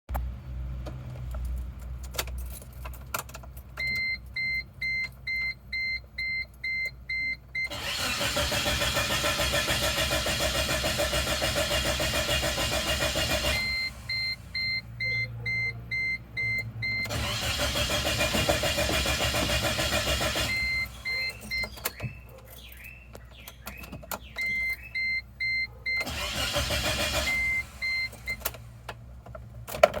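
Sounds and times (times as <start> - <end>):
car engine cranking: 7.6 - 15.2, 16.9 - 25.0, 25.9 - 30.0
electronic beeping: 22.8 - 26.0.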